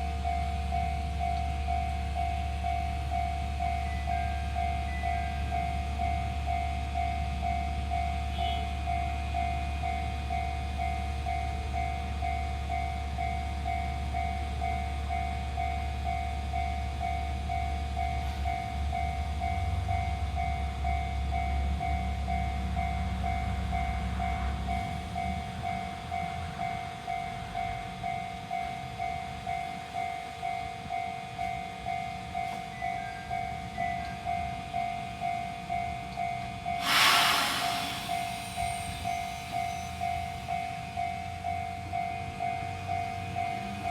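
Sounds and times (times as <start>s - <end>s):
level-crossing alarm bell dinging: 0.0s - 43.9s
train rumbling: 0.0s - 43.9s
loud hiss: 36.8s - 40.4s.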